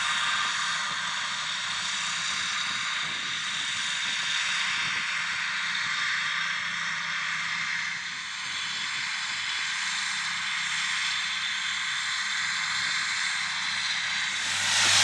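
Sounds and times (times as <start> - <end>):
tractor engine drone: 12.7 - 15.0
disc mowers high hiss: 14.1 - 15.0.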